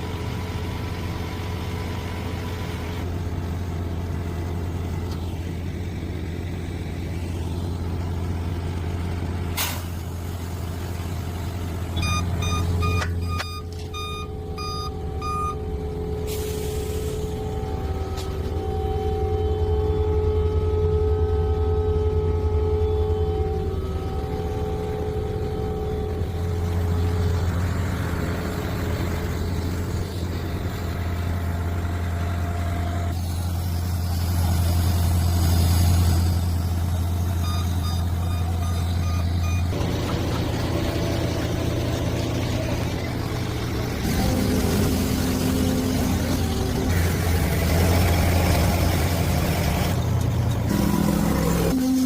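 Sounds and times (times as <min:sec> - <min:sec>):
diesel engine running: 0:00.0 - 0:52.0
warning beeps: 0:12.0 - 0:15.6, 0:37.4 - 0:39.8.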